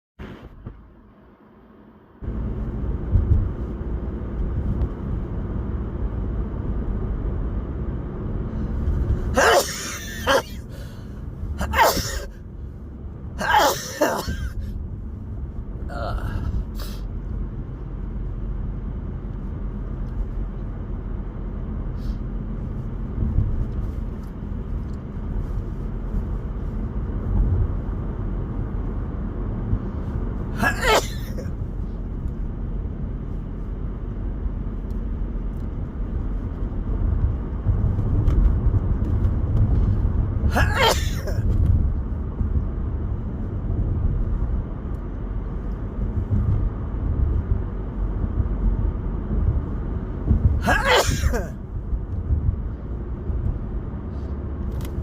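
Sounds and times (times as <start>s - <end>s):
car driving rumble: 0.2s - 55.0s
man sneezing: 9.3s - 10.8s, 11.6s - 12.4s, 13.4s - 14.7s, 30.6s - 31.5s, 40.5s - 41.6s, 50.6s - 51.6s.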